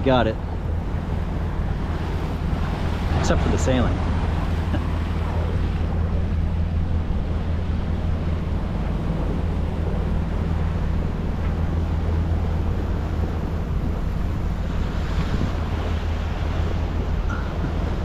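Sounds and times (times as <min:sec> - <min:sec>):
boat diesel engine droning: 0:00.0 - 0:18.0
water and wind hissing: 0:00.0 - 0:18.0.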